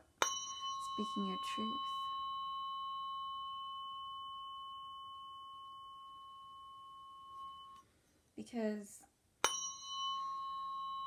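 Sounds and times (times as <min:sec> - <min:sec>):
tuning fork ringing: 0:00.0 - 0:08.0, 0:09.4 - 0:11.0.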